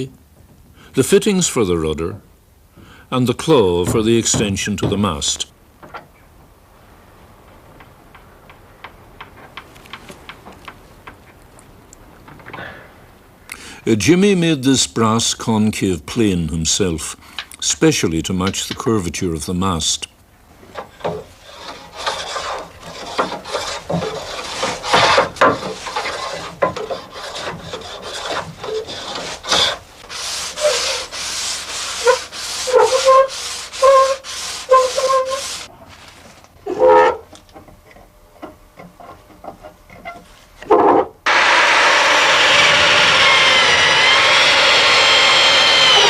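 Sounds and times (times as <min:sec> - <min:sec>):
hand plane scraping wood: 0:20.7 - 0:35.7
plane squeaking: 0:30.6 - 0:31.1, 0:31.9 - 0:35.7
motor running with wavering whine: 0:41.3 - 0:46.0.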